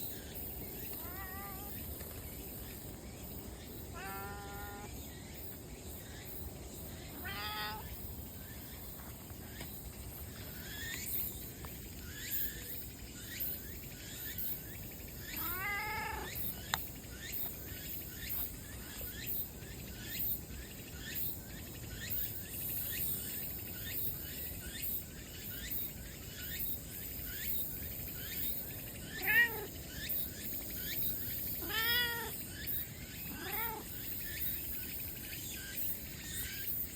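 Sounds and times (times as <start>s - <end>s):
cat meowing: 1.0s - 1.8s, 3.9s - 4.9s, 7.2s - 7.9s, 15.4s - 16.3s, 29.2s - 29.7s, 31.6s - 32.4s, 33.3s - 33.9s.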